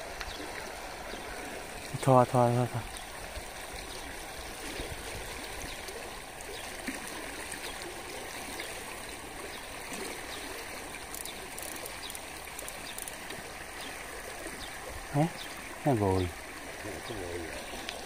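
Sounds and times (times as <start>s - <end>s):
sea water washing: 0.0s - 18.0s.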